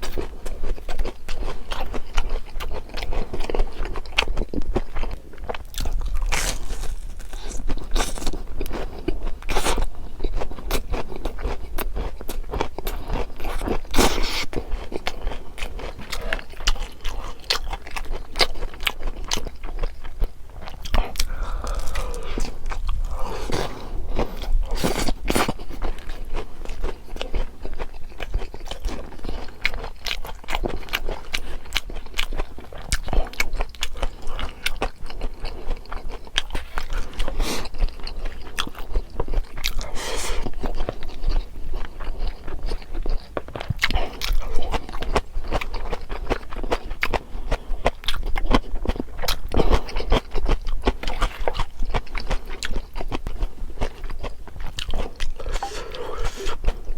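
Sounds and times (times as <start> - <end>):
chewing and crunching: 0.0 - 56.9.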